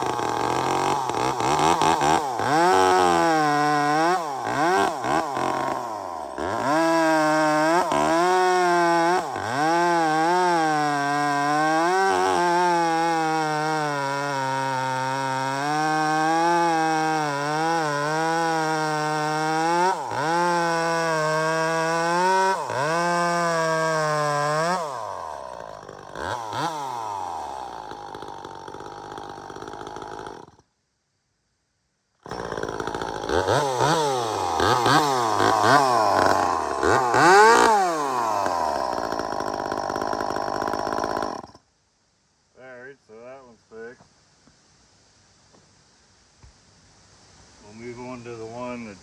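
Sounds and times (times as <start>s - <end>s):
chainsaw idling and revving: 0.0s - 30.7s, 32.2s - 41.7s.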